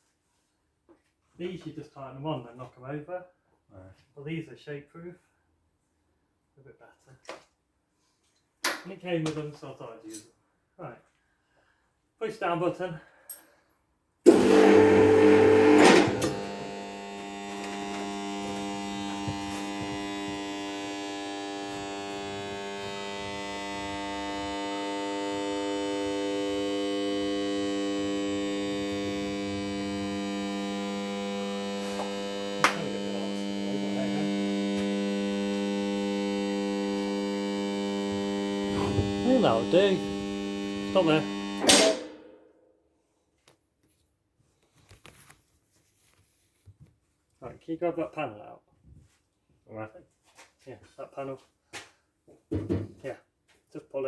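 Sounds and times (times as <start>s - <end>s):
electric motor humming: 14.3s - 42.1s.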